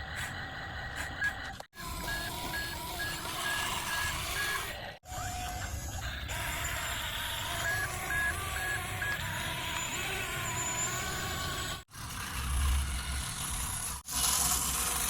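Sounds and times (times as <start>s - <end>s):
truck reversing beeper: 1.2s - 4.7s, 7.5s - 11.6s.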